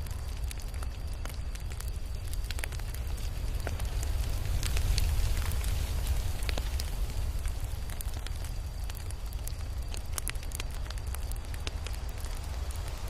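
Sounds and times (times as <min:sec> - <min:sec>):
low rumble of flames: 0:00.0 - 0:13.0
wood fire crackling and popping: 0:00.0 - 0:13.0.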